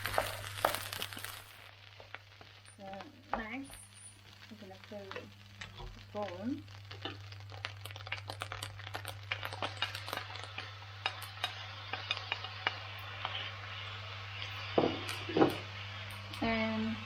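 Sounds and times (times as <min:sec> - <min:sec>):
frying hiss: 0:00.0 - 0:17.0.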